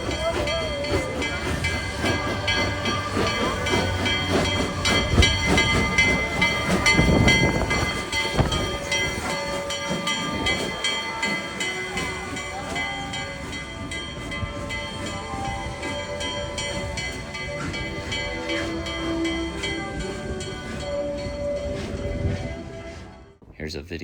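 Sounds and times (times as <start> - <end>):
train hissing: 0.0 - 23.4
train rumbling and clanking: 0.0 - 24.0.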